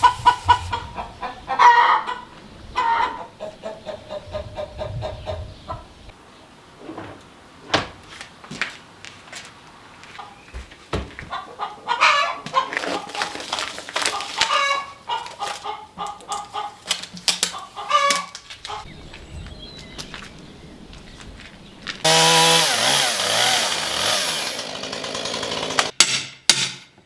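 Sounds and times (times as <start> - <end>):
chickens clucking: 0.0 - 6.2, 10.2 - 10.6, 11.2 - 20.4.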